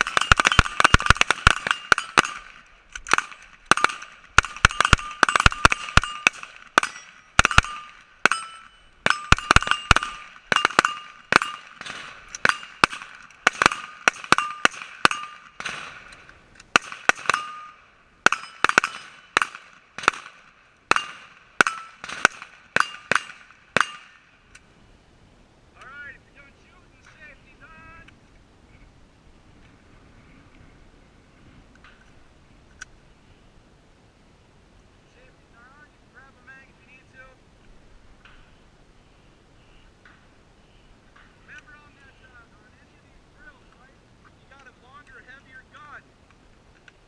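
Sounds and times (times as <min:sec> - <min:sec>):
rifle shots with metallic ring: 0:00.0 - 0:16.1, 0:16.7 - 0:24.3.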